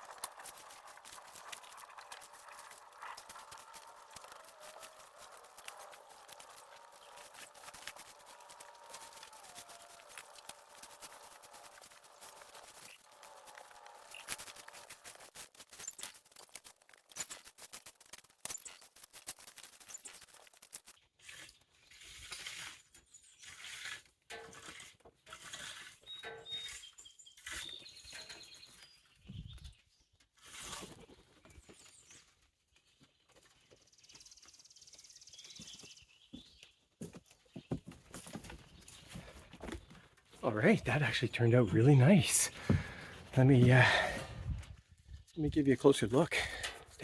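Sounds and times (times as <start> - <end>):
rake scraping through wet grass: 0.0 - 28.6, 30.4 - 31.0.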